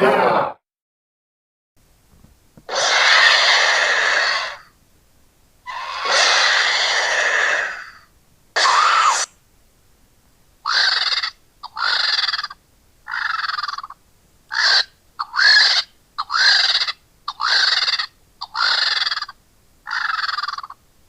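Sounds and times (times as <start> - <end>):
harsh hissing creature calls: 2.7 - 4.8, 5.6 - 9.4, 10.6 - 20.8.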